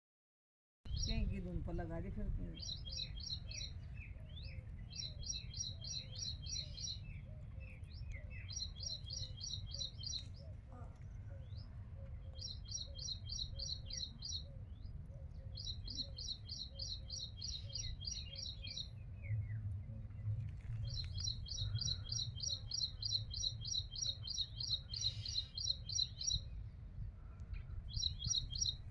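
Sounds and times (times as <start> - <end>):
bird chirping rapidly: 0.9 - 1.3, 2.5 - 3.7, 8.4 - 10.2, 12.4 - 14.5, 15.6 - 18.9, 21.2 - 26.5, 27.9 - 28.9.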